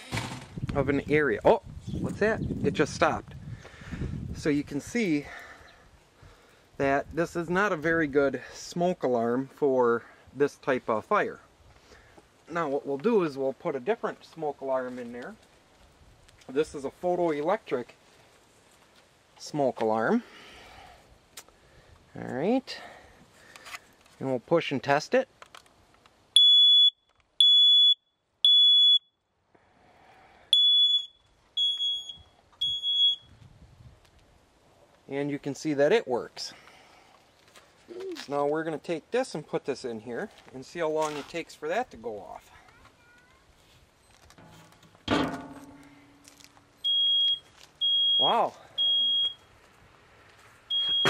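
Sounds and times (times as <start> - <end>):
smoke alarm beeping: 26.4 - 29.2, 30.5 - 33.3, 46.8 - 49.5, 50.7 - 51.0
ringing clank: 44.4 - 46.2.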